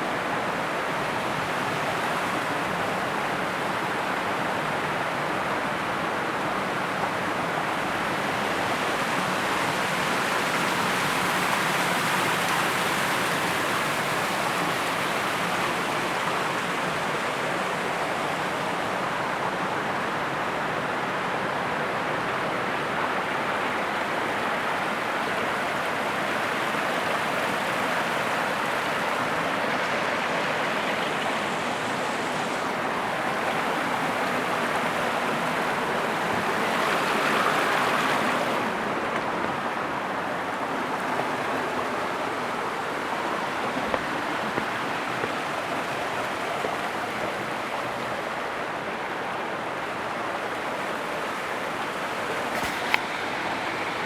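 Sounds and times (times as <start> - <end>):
waterfall rushing: 21.9 - 54.0.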